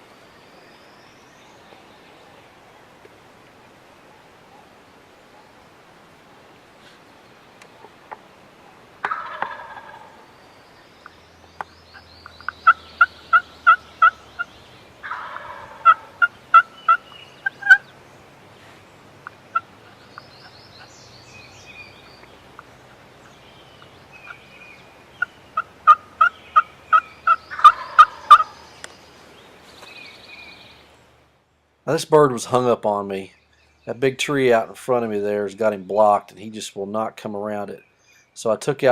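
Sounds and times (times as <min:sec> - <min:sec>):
songbirds chirping faintly: 0:00.0 - 0:38.9
turkey gobbling: 0:07.8 - 0:10.3, 0:11.9 - 0:17.9, 0:19.2 - 0:21.0, 0:21.6 - 0:28.7
turkey yelps: 0:09.0 - 0:10.2, 0:12.6 - 0:17.9, 0:24.1 - 0:28.6.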